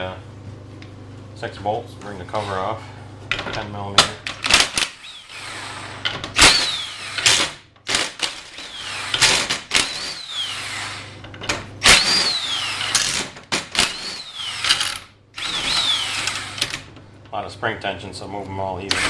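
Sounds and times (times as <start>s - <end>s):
power driver whirring and whining: 4.4s - 17.0s.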